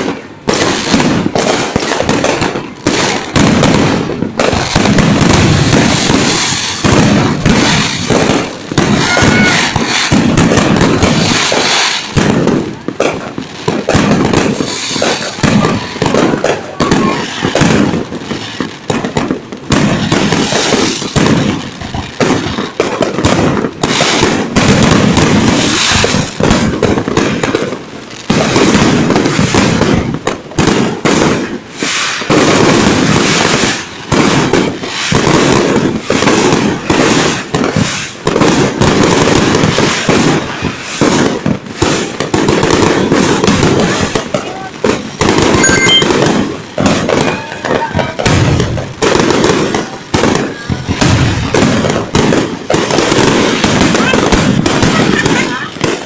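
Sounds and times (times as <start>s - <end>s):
fireworks bangs and crackles: 0.0s - 56.0s.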